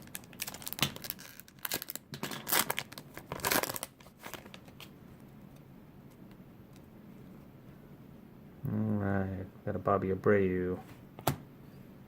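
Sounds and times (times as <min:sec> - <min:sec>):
foil wrapper tearing and crinkling: 0:00.0 - 0:04.9.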